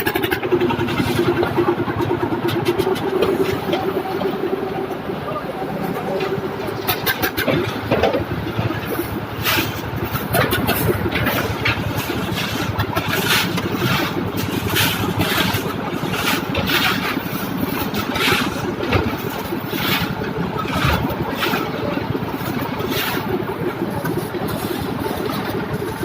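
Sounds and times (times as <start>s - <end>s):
engine running steadily: 0.0s - 26.0s.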